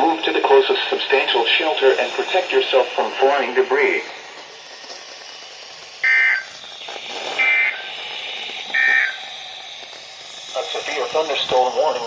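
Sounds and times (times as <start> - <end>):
receiver hiss: 0.0 - 12.0
digital warbling data tones: 6.0 - 9.5, 10.3 - 12.0.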